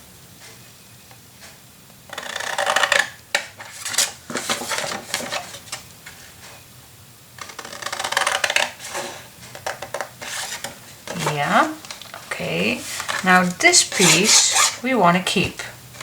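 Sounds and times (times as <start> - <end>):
paper rustling: 3.6 - 6.4, 7.4 - 16.0
scissors cutting paper: 7.4 - 9.1, 9.7 - 14.8.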